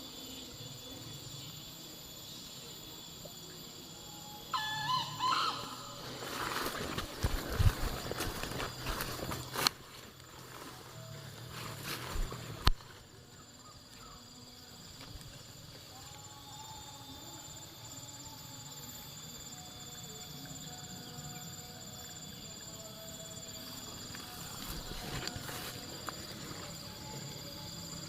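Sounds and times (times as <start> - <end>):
insects buzzing: 0.0 - 28.0
faint drawn-out animal call: 4.2 - 6.1.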